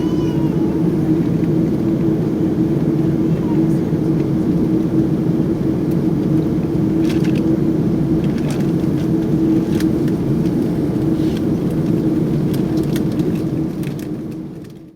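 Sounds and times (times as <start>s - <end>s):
air-conditioning hum: 0.0s - 14.8s
engines idling low rumble: 0.0s - 14.8s
faint clicks and rattles: 11.4s - 14.9s.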